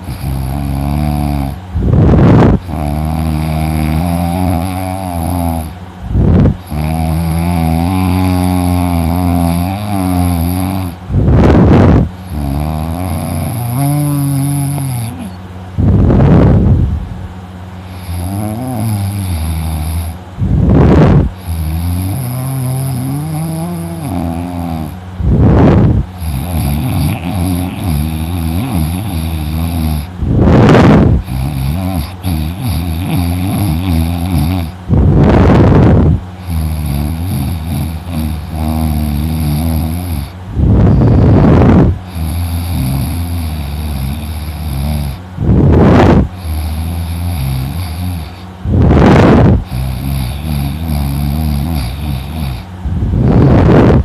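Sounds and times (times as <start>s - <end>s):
man snoring: 0.0s - 16.6s, 17.8s - 54.0s.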